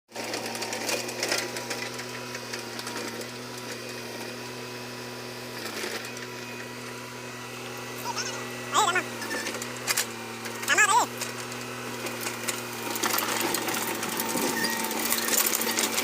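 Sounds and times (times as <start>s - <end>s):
excavator engine running: 5.4s - 16.0s.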